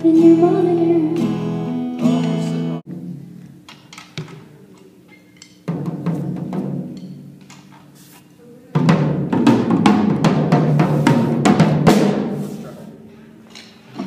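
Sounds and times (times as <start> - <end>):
drum kit with cymbals: 5.6 - 13.4.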